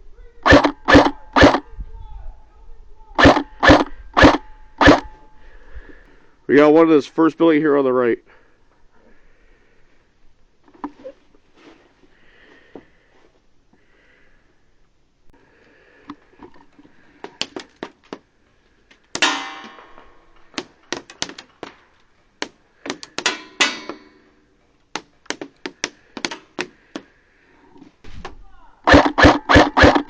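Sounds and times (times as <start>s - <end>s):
airsoft gunshots snapping: 0.5s - 1.6s, 3.2s - 5.1s, 28.9s - 30.0s.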